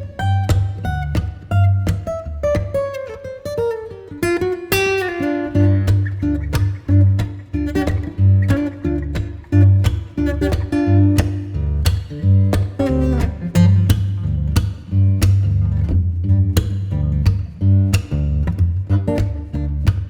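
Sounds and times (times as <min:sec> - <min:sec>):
guitar music with bass: 0:00.0 - 0:20.0.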